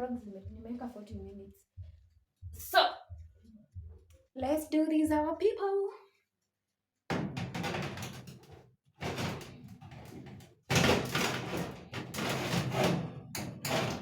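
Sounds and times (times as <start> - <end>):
oven door and tray clattering: 9.0 - 14.0.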